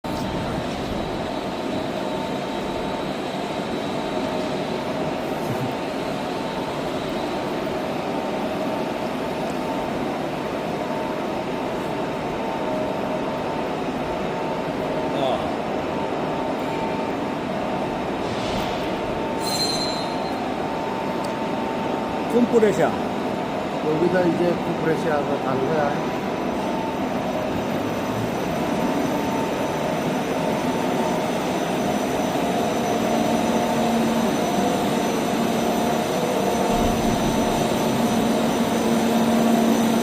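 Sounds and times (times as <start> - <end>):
machine whining tones: 16.6 - 21.2, 23.9 - 40.0
high-pitched squeal: 19.4 - 20.4
heavy machinery drone: 24.0 - 40.0.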